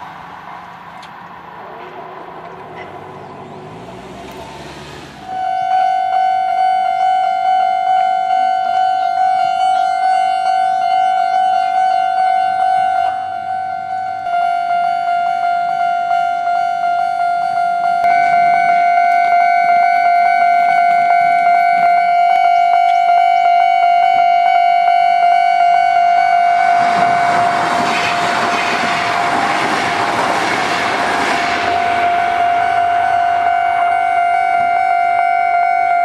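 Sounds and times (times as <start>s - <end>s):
level crossing warning bell: 5.3s - 30.1s, 30.9s - 36.0s
train wheels rushing on rails: 26.4s - 33.5s.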